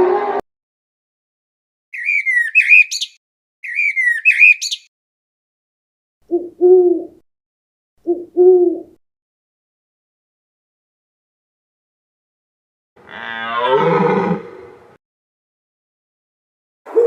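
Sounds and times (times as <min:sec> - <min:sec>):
bird warbling: 0:02.0 - 0:04.9.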